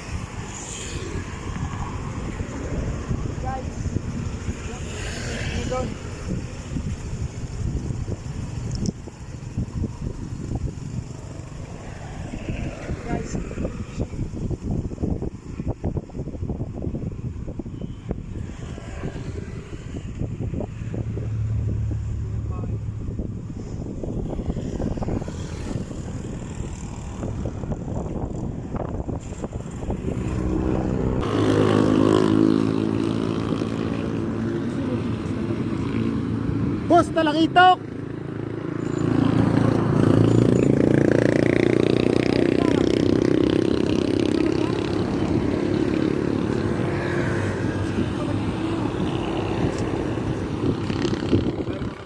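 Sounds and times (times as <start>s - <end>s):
wind buffeting microphone: 0.0s - 52.0s
scooter engine running: 1.5s - 16.2s, 37.9s - 52.0s.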